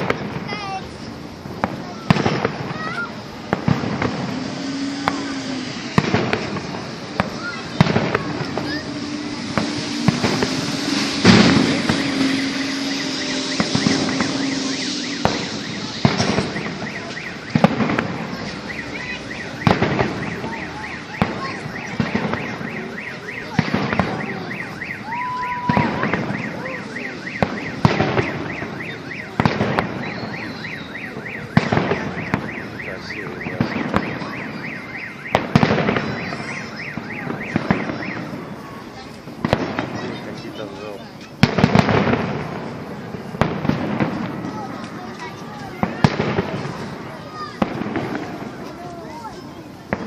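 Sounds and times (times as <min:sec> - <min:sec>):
fireworks booming: 0:00.0 - 0:50.0
car alarm chirping: 0:07.3 - 0:39.1.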